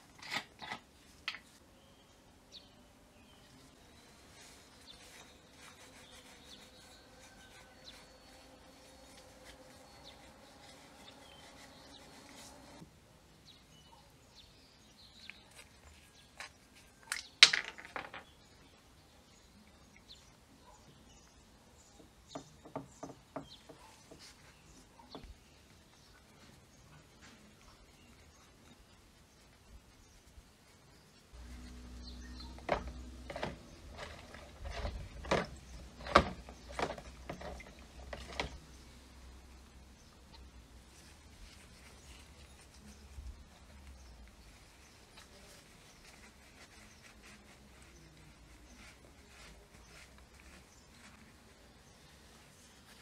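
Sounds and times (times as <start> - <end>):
faint low hum: 30.9 - 35.8.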